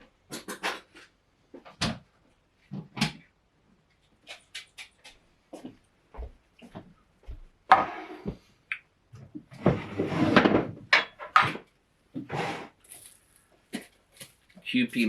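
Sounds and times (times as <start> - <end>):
clattering and rustling: 0.2 - 3.2, 9.2 - 14.7.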